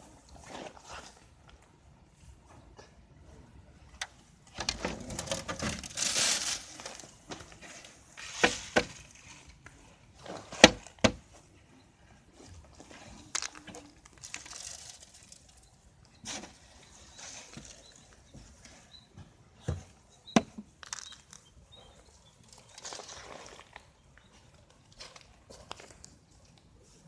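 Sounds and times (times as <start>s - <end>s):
dry rustling of stalks: 4.6s - 18.9s, 20.7s - 27.0s.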